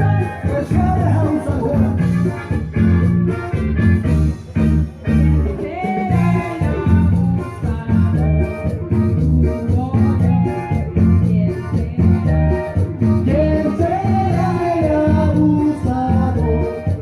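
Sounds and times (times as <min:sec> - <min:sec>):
latin dance music: 0:00.0 - 0:17.0
pulsing bass beat: 0:00.0 - 0:17.0.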